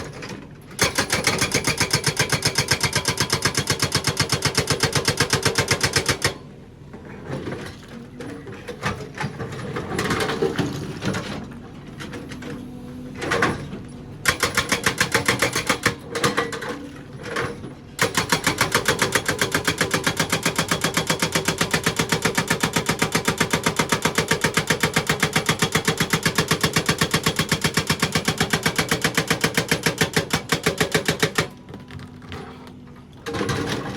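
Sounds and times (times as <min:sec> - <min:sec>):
hydraulic breaker hammering rock: 0:00.0 - 0:06.4, 0:13.2 - 0:31.8.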